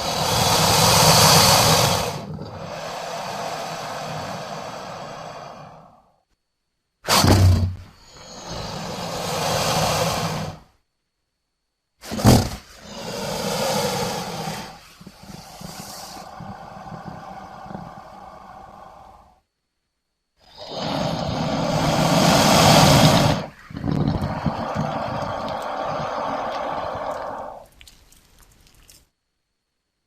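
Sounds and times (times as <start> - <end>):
monster roars and growls: 0.0 - 5.9, 12.1 - 19.4, 20.5 - 27.7.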